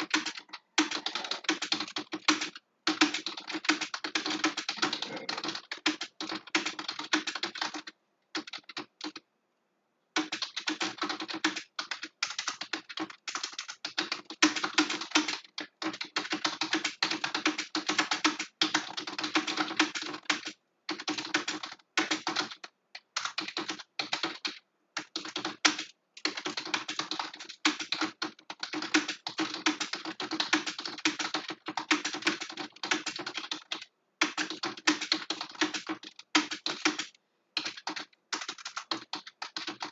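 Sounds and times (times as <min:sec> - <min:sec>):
fast typing on keyboard: 0:00.0 - 0:09.2, 0:10.2 - 0:39.9.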